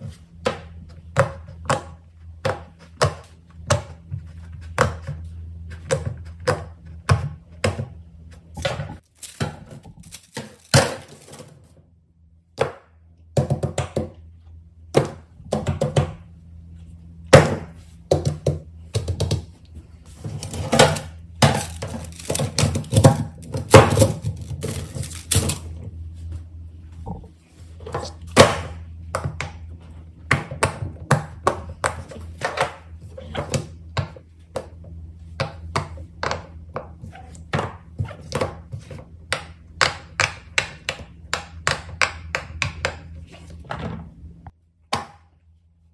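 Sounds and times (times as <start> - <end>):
low hum: 14.0 - 30.3.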